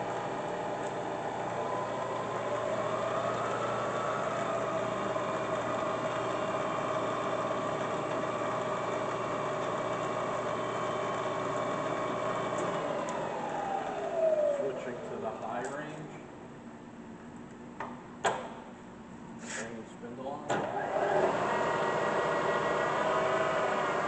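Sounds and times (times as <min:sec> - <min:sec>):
milling machine spindle whine: 0:00.0 - 0:15.7, 0:20.7 - 0:24.0.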